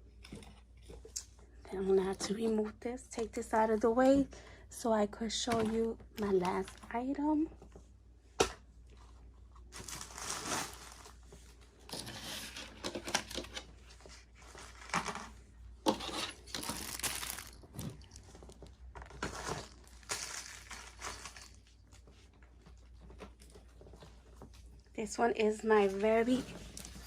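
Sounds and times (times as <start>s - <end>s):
plastic bag crinkling: 9.7s - 11.3s, 16.3s - 22.0s.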